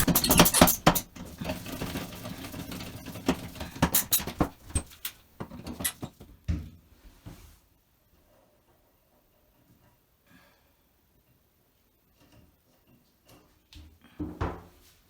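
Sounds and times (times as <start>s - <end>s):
small parts clicking and scraping: 0.0s - 6.1s.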